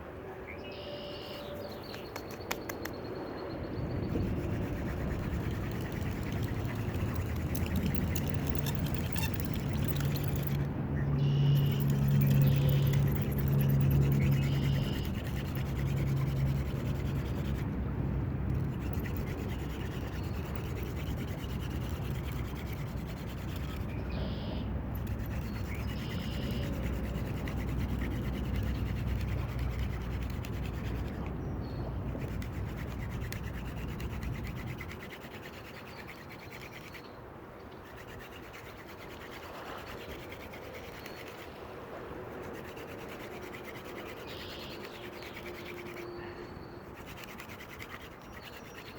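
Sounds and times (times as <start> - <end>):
wooden spindle grinding in hearth board: 4.0 - 10.7, 11.6 - 17.7, 18.5 - 24.0, 25.0 - 37.0, 42.3 - 46.1, 46.9 - 48.9.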